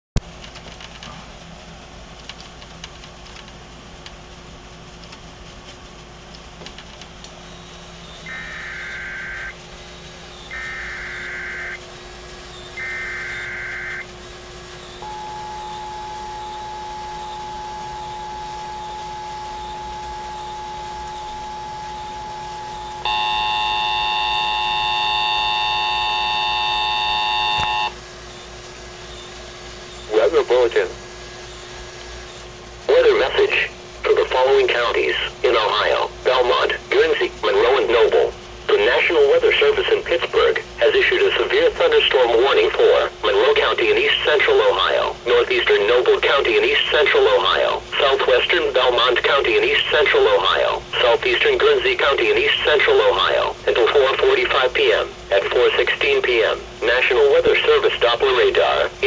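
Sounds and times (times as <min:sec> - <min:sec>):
faint hum: 0:00.2 - 0:59.0
radio hiss: 0:07.3 - 0:28.0, 0:29.4 - 0:59.0
warbling digital data bursts: 0:07.4 - 0:11.9, 0:12.6 - 0:28.0
steady single tone: 0:08.2 - 0:09.6, 0:10.5 - 0:11.8, 0:12.6 - 0:14.2, 0:15.0 - 0:28.0
two-tone attention signal: 0:08.2 - 0:09.6, 0:10.3 - 0:11.8, 0:12.6 - 0:14.2, 0:15.0 - 0:28.0.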